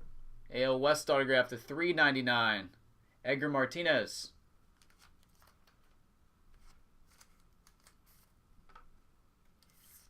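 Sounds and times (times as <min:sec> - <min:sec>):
trading cards rustling: 0:04.7 - 0:08.8.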